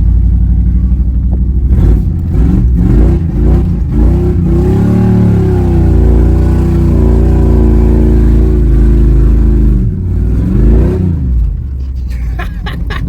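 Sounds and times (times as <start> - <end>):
engine revving hard: 1.7 - 11.4.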